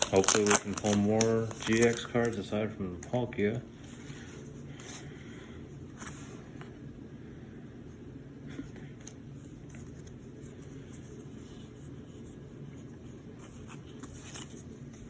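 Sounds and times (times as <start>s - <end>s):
foil pack crinkling and rustling: 0.0s - 5.1s, 13.7s - 15.0s
steady low hum: 0.0s - 15.0s.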